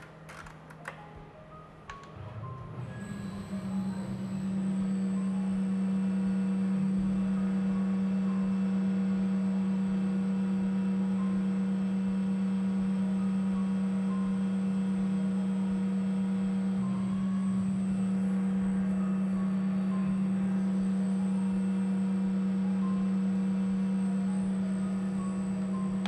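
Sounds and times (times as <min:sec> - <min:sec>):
lathe humming: 0:01.9 - 0:26.0.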